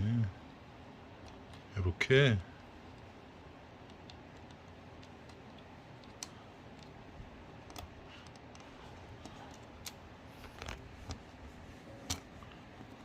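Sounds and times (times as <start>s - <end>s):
small clicks and taps: 3.8s - 7.0s, 7.6s - 11.2s.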